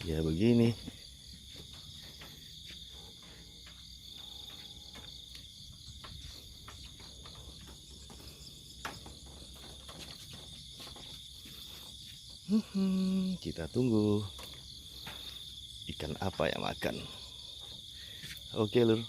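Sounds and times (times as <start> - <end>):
insects chirring: 0.0 - 19.0.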